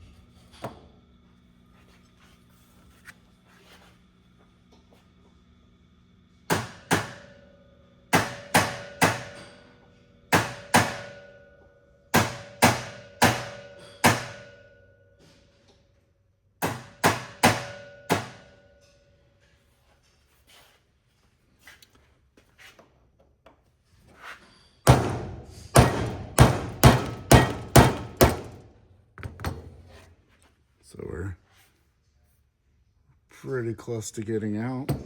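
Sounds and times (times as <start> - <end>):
hammer striking metal punch: 6.5 - 7.4, 8.1 - 9.7, 10.3 - 14.9, 16.6 - 18.9, 24.9 - 29.7.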